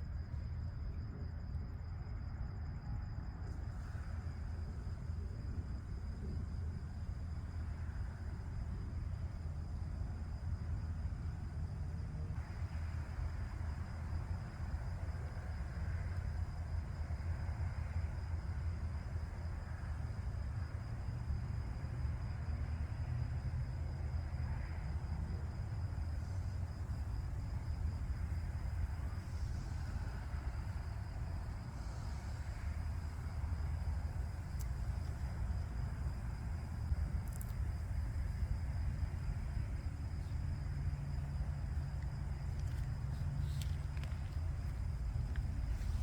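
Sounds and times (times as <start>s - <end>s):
low outdoor rumble: 0.0s - 46.0s
faint ticks: 34.4s - 35.4s, 37.1s - 37.9s, 41.7s - 46.0s.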